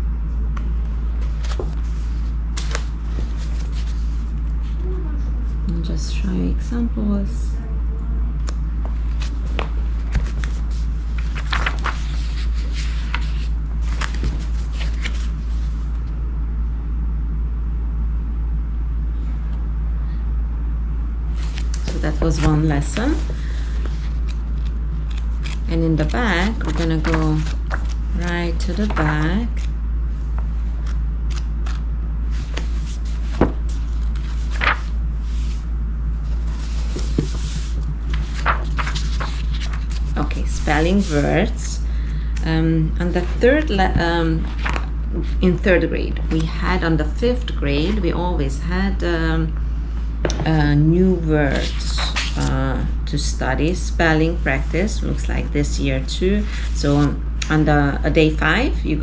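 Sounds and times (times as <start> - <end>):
steady low hum: 0.0 - 59.0
steady low rumble: 0.0 - 59.0
paper pages rustling: 1.1 - 4.8, 8.8 - 16.1, 21.3 - 41.7, 43.0 - 46.7, 51.5 - 52.8, 56.4 - 57.2.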